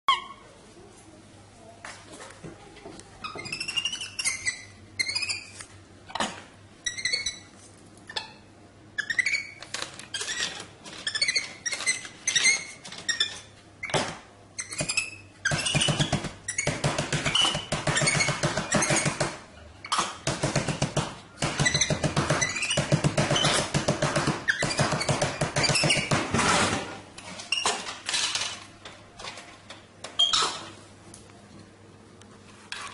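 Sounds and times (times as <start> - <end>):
monkey squeaking: 0.1 - 0.4, 3.2 - 7.5, 9.0 - 14.0, 14.6 - 19.2, 21.6 - 23.7, 24.5 - 26.1, 30.2 - 30.7.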